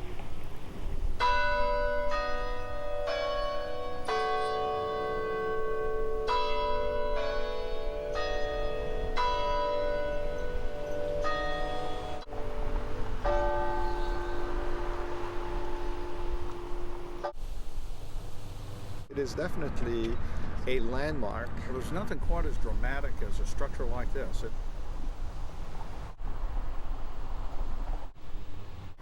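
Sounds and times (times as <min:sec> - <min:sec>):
tower bells chiming a tune: 0:01.2 - 0:17.4.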